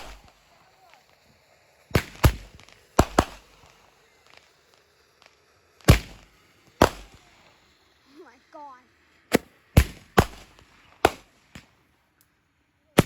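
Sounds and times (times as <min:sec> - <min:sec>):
fireworks bangs: 0:00.0 - 0:12.1.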